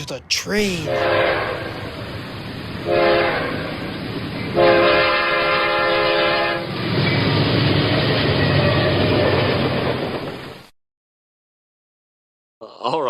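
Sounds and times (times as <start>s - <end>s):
train rumbling along track: 1.5s - 10.7s
train horn blasts: 2.8s - 3.7s, 4.5s - 6.7s.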